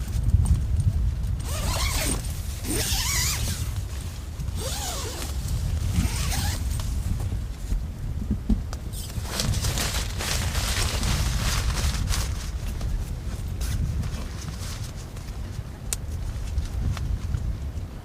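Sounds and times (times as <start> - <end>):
wind buffeting microphone: 0.0 - 18.0
rustling rasping noise: 8.9 - 17.5.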